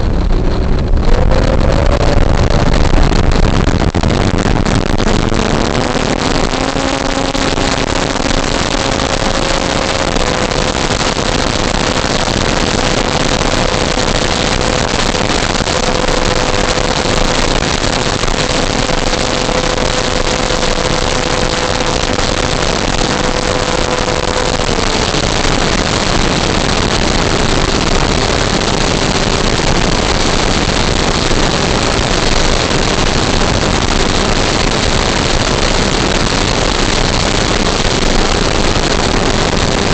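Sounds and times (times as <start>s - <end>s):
propeller air rush: 0.0s - 39.9s
model plane motor whine: 4.8s - 39.9s.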